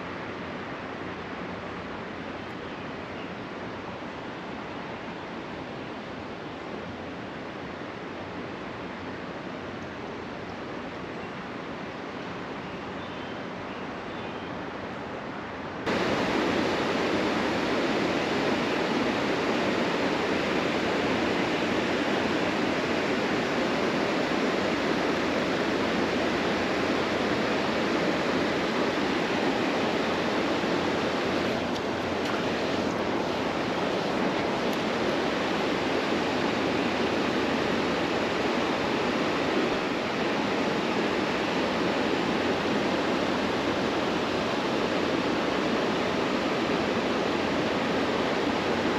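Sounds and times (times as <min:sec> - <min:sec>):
creek water flowing: 0:15.9 - 0:48.9.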